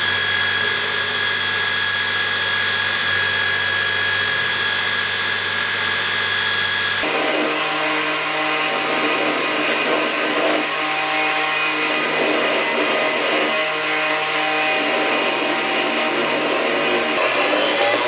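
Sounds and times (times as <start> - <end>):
electric power tool running: 6.6 - 18.0.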